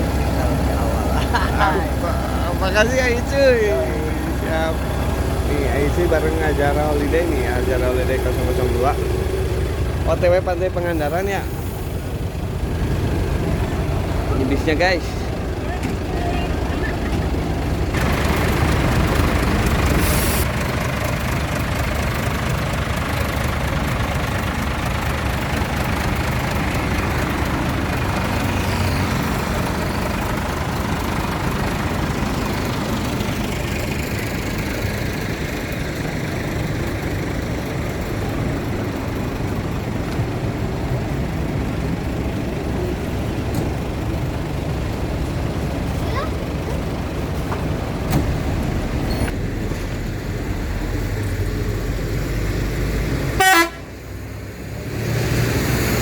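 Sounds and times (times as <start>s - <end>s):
bus diesel engine idling: 0.0s - 56.0s
sharp hiss of air: 20.0s - 20.5s.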